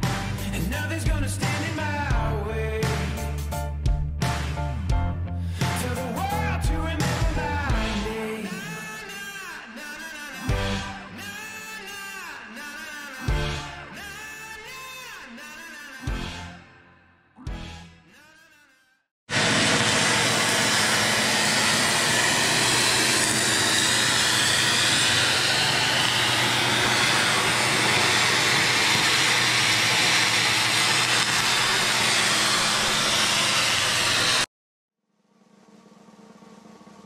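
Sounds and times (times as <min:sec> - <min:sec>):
power tool on metal hull: 0:19.3 - 0:34.5.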